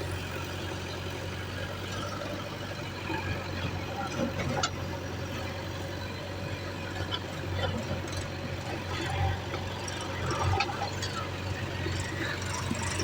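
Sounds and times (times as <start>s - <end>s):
diesel engine running: 0.0s - 13.0s.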